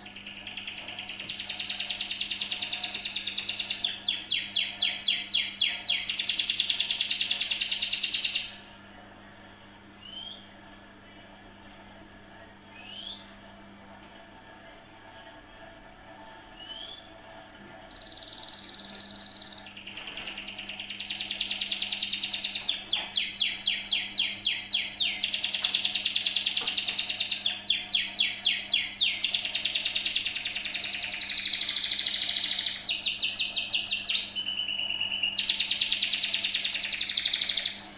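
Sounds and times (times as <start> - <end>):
canary singing trills: 0.0 - 8.6, 17.9 - 37.8.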